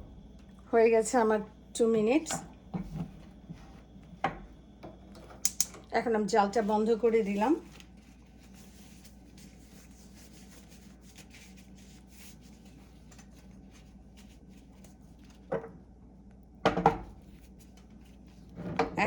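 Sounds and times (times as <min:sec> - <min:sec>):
low steady hum: 0:00.0 - 0:19.0
soft rubbing and rustling: 0:06.2 - 0:15.5, 0:17.2 - 0:19.0.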